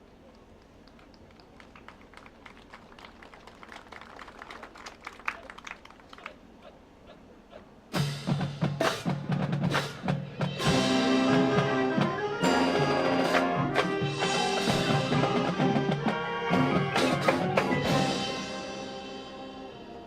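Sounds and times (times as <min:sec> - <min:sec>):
sharp percussion hits: 0:07.9 - 0:19.5
marching band playing: 0:07.9 - 0:20.0.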